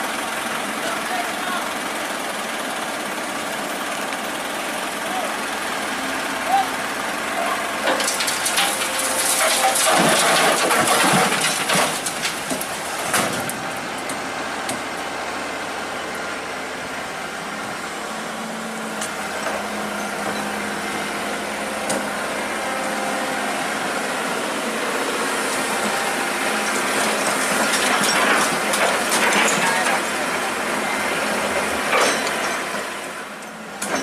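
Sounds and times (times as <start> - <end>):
excavator engine running: 0.0 - 34.0
scraping and clanking: 7.9 - 13.6, 27.2 - 30.1.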